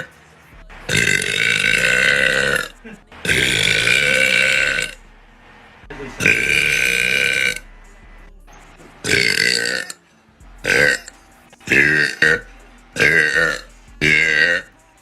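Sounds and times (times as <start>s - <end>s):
woman burping loudly: 0.9s - 5.0s, 6.2s - 7.6s, 9.1s - 10.0s, 10.7s - 11.1s, 11.7s - 14.6s.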